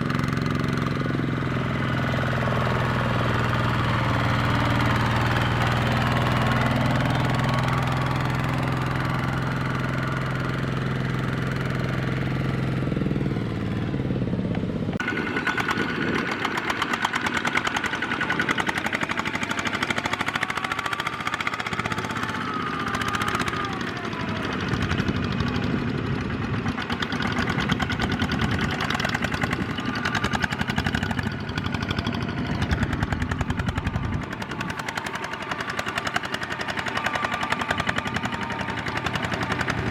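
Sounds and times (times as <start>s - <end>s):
tractor diesel engine knocking: 0.0s - 39.9s.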